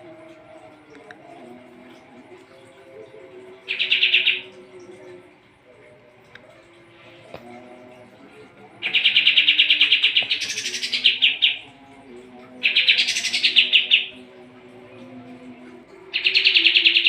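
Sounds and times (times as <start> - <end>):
bird singing rapid trills: 3.7 - 4.5, 8.8 - 11.7, 12.6 - 14.2, 16.1 - 17.0.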